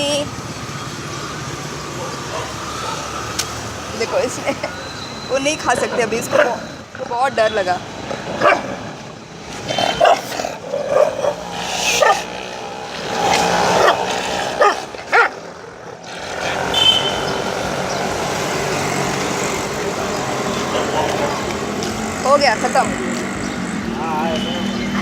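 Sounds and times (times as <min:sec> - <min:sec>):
vehicle engine: 0:00.0 - 0:25.0
dogs barking: 0:01.8 - 0:04.8, 0:05.8 - 0:06.8, 0:08.4 - 0:08.9, 0:09.6 - 0:18.4, 0:19.4 - 0:22.0.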